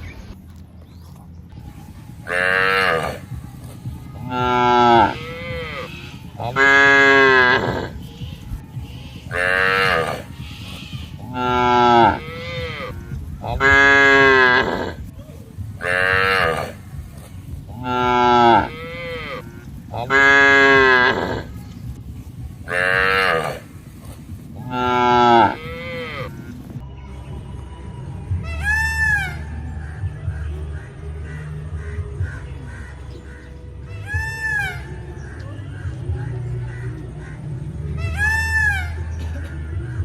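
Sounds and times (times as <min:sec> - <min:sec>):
cow mooing: 0:02.3 - 0:03.3, 0:04.3 - 0:08.0, 0:09.3 - 0:10.3, 0:11.2 - 0:15.0, 0:15.8 - 0:16.8, 0:17.7 - 0:21.5, 0:22.7 - 0:23.6, 0:24.6 - 0:26.5.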